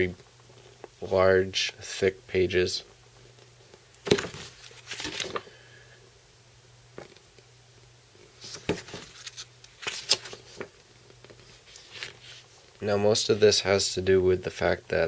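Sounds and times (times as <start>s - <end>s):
paper pages rustling: 4.0s - 5.5s, 8.4s - 12.7s.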